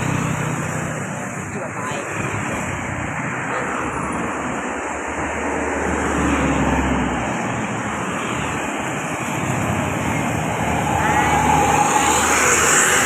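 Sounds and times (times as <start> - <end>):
roadside traffic noise: 0.0 - 13.0
vehicle engine passing close by: 5.3 - 13.0.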